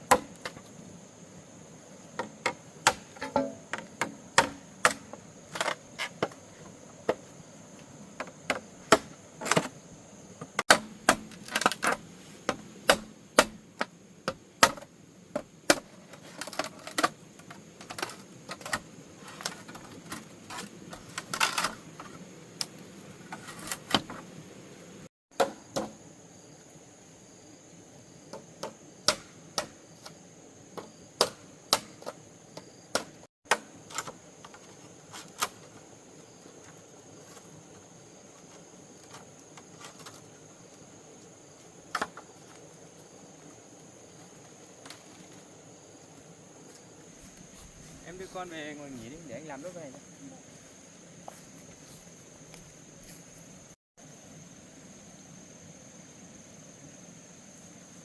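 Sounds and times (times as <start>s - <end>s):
hand tool knocking on bamboo: 2.2s - 5.0s.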